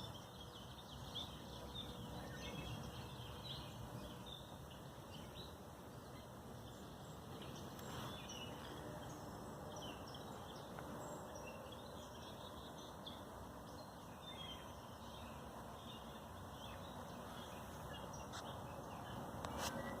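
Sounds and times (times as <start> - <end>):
small birds chirping: 0.0 - 20.0.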